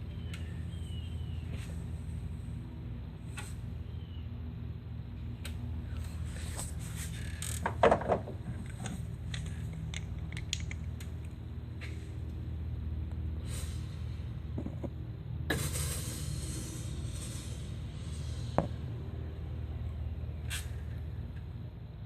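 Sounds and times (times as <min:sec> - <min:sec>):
low machine hum: 0:00.0 - 0:22.0
handling clicks and knocks: 0:07.6 - 0:11.4.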